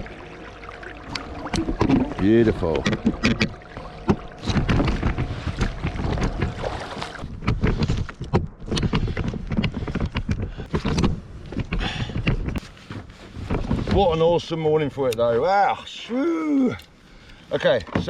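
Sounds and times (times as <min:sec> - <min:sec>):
water splashing against hull: 0:00.0 - 0:14.2
wind rumble on microphone: 0:01.1 - 0:12.6.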